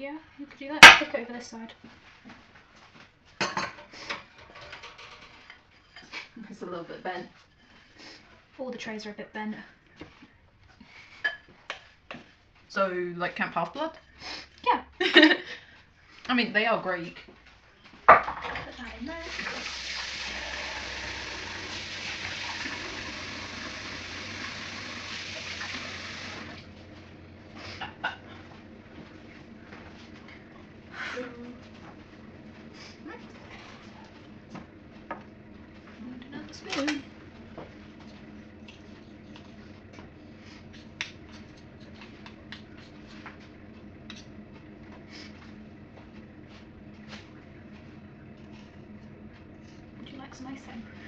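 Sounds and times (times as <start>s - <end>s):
steady low hum: 0.0s - 51.0s
water running from a tap: 19.1s - 26.7s.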